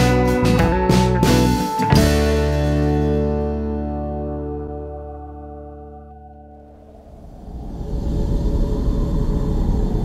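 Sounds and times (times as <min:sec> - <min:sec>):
held music chord ringing: 0:00.0 - 0:06.9.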